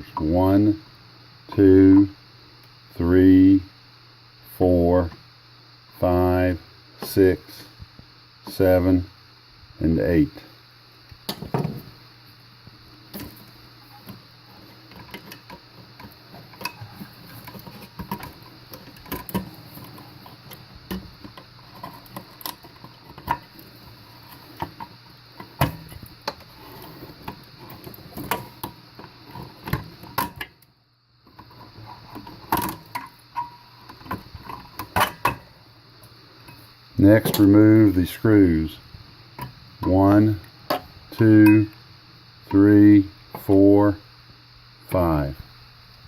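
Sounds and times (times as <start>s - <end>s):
low steady hum: 0.0s - 46.0s
small clicks and knocks on parts: 14.9s - 26.5s.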